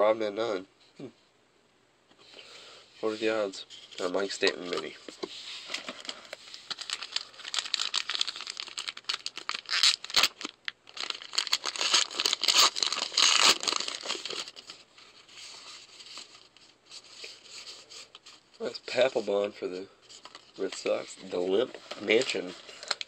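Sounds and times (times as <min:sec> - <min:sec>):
cards rustling: 0:03.8 - 0:14.8, 0:20.0 - 0:23.0
foil wrapper crinkling and tearing: 0:05.8 - 0:14.8, 0:20.2 - 0:23.0.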